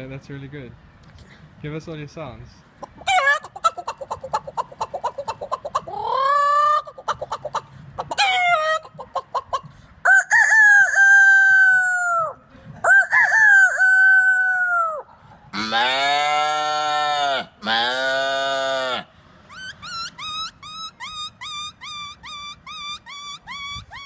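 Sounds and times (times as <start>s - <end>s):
person imitating hen clucking: 2.8s - 24.0s
person imitating rooster crows: 10.1s - 15.0s, 15.6s - 19.0s
low drawn-out animal call: 13.1s - 24.0s.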